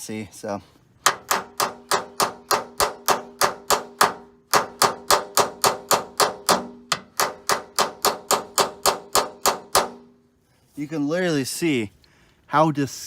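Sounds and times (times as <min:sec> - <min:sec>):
hammer striking steel punch: 0:01.0 - 0:10.1.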